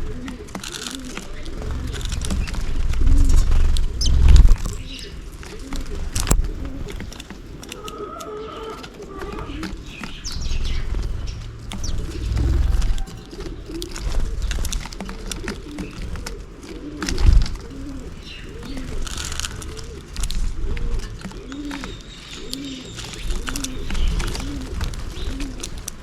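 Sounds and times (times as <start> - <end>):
wings flapping: 0.0 - 8.0, 8.8 - 26.0
bird cooing: 0.0 - 26.0
sparrows chirping: 0.0 - 26.0
loud low bump: 1.7 - 4.9.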